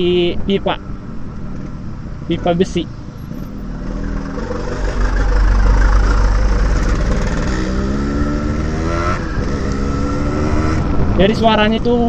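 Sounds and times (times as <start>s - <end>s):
motorcycle engine accelerating: 3.1s - 11.3s.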